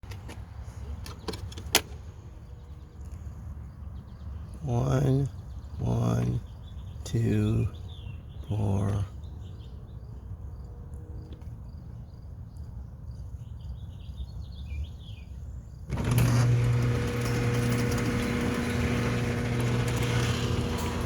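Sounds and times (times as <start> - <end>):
birds chirping: 2.4 - 10.1
garage door opener humming: 15.9 - 21.0.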